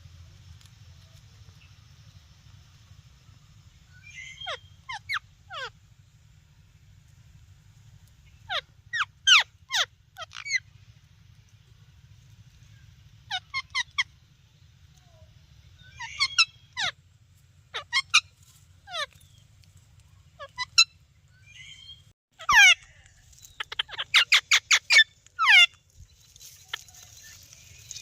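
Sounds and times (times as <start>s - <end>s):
parrot chirping: 3.9s - 5.8s, 8.4s - 10.7s, 13.3s - 14.1s, 15.8s - 16.9s, 17.7s - 19.1s, 20.4s - 25.8s.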